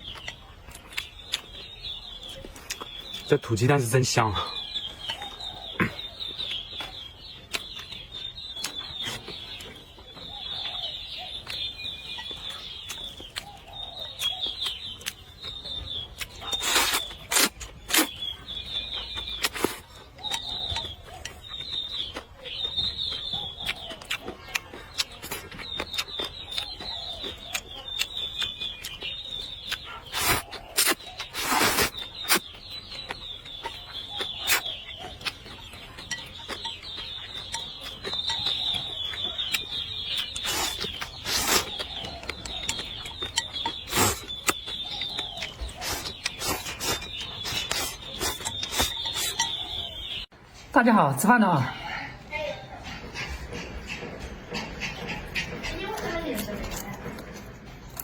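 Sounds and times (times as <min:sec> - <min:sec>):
person chewing: 0:00.0 - 0:03.3, 0:04.6 - 0:50.3, 0:56.6 - 0:58.0
small birds chirping: 0:00.0 - 0:58.0
loud slurps: 0:30.1 - 0:32.4.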